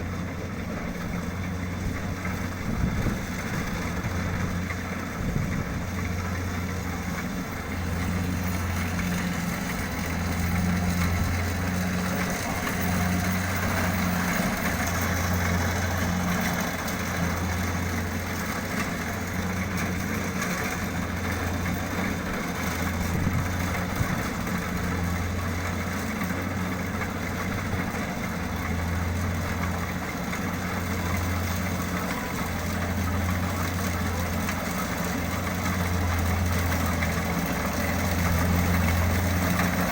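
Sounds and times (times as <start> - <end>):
combine harvester diesel engine: 0.0 - 39.9
machinery clatter: 0.1 - 39.9.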